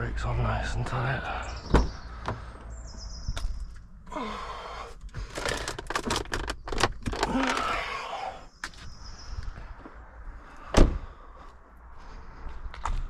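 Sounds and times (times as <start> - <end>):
handling and rattling: 5.0 - 7.8.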